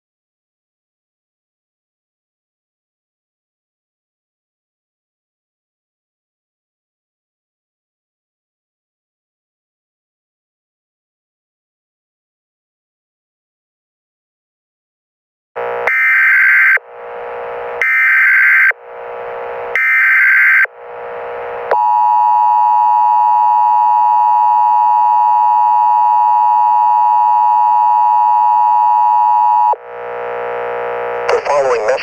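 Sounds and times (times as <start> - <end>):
data tone bursts: 15.8 - 16.8, 17.8 - 18.8, 19.7 - 20.7, 21.7 - 29.8.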